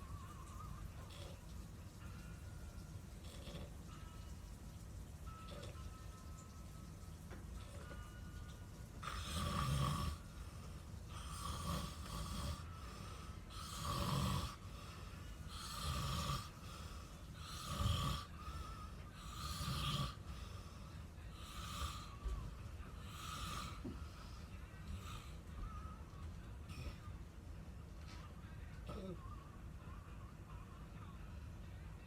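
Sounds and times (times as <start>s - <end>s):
person snoring: 0.1s - 1.5s, 3.2s - 3.8s, 9.0s - 26.0s.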